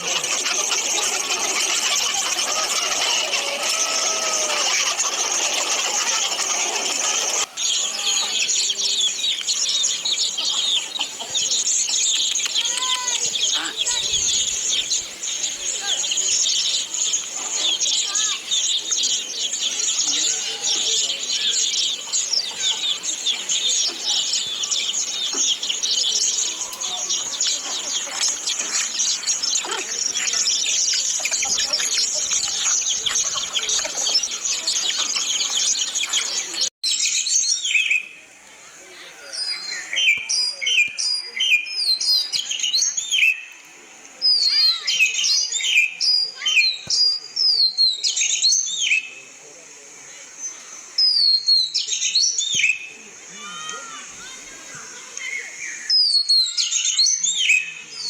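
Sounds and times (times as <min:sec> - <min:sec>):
small birds chirping and twittering: 0:00.0 - 0:58.0
bird whistling song: 0:53.6 - 0:58.0.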